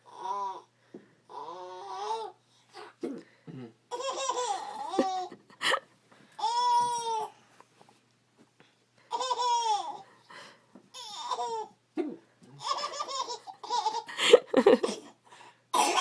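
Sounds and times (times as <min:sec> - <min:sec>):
baby laughing and squealing: 0:03.9 - 0:05.3, 0:09.1 - 0:10.0, 0:12.6 - 0:14.1.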